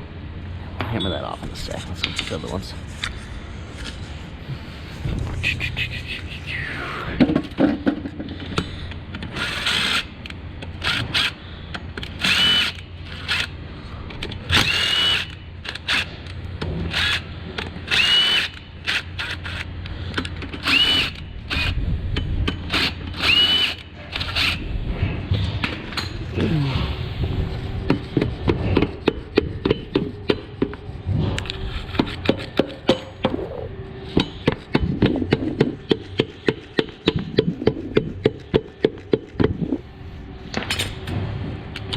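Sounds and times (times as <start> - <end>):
cordless power tool whirring: 9.3 - 10.1, 12.0 - 13.6, 14.5 - 16.1, 16.9 - 19.7, 20.6 - 21.8, 22.7 - 24.6.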